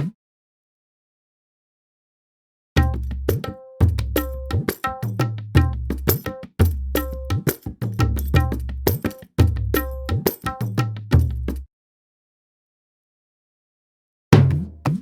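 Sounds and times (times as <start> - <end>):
hand drums rhythm: 2.8 - 11.6, 14.4 - 15.0.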